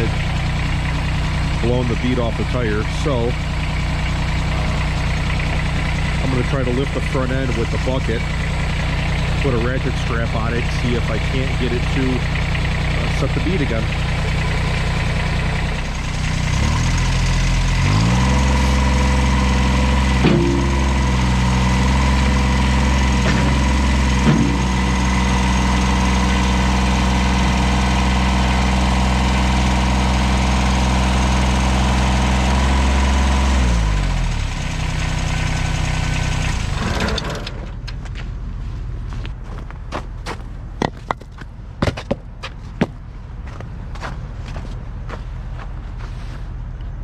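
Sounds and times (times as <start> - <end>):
tractor diesel engine revving: 0.0 - 37.9
sharp knocks: 20.2 - 21.4, 23.1 - 25.0.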